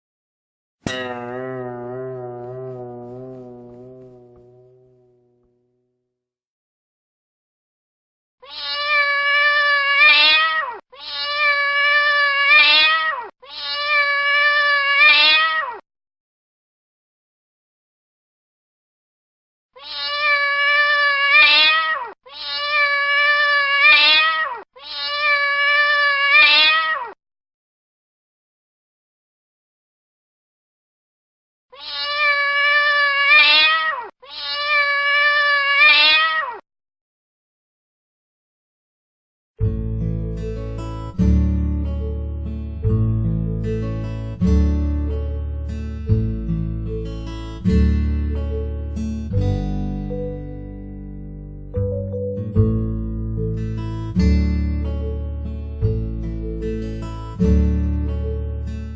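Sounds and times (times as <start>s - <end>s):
cat yowling meow: 8.4s - 15.8s, 19.8s - 27.2s, 31.7s - 36.6s.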